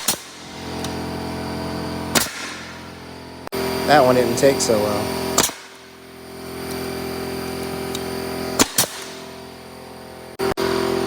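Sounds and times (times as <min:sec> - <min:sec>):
nail gun firing: 0:00.0 - 0:01.0, 0:02.1 - 0:03.0, 0:05.3 - 0:06.0, 0:07.9 - 0:09.5
air compressor humming: 0:00.0 - 0:11.0.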